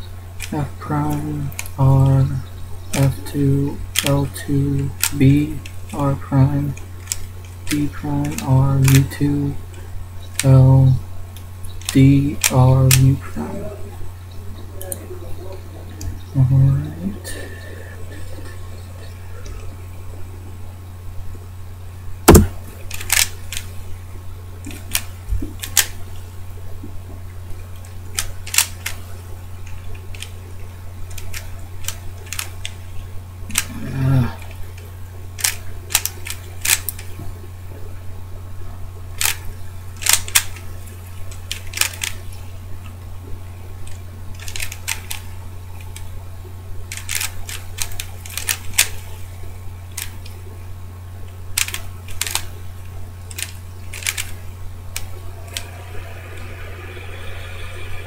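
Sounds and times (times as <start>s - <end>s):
steady low hum: 0.0s - 58.0s
plastic puzzle cube layers clicking: 0.4s - 9.4s, 11.7s - 13.2s, 22.3s - 23.7s, 24.6s - 26.0s, 27.8s - 30.4s, 31.1s - 32.8s, 33.5s - 37.2s, 39.2s - 39.4s, 40.0s - 40.7s, 41.3s - 42.3s, 43.8s - 46.1s, 46.9s - 49.2s, 49.9s - 50.4s, 51.5s - 52.6s, 53.3s - 55.8s.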